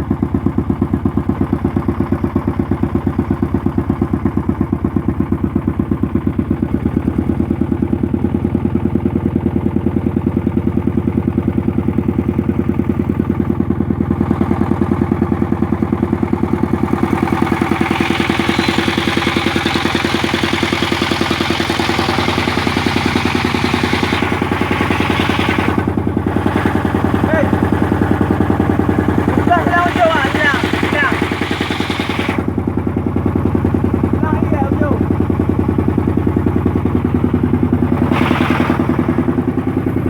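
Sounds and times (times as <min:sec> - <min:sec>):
machine engine chugging: 0:00.0 - 0:40.0.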